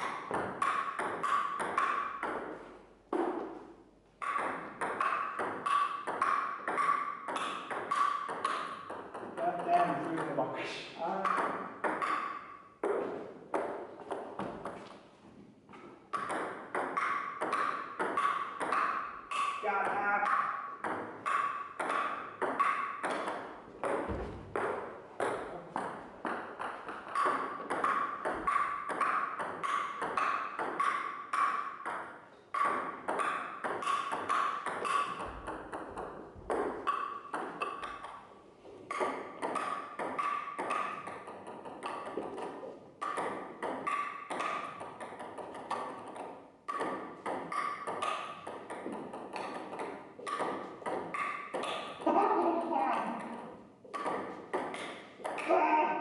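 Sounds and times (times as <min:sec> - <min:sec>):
table tennis ball clicks: 0:04.2 - 0:10.3, 0:11.2 - 0:13.0, 0:16.1 - 0:19.6, 0:38.9 - 0:52.0.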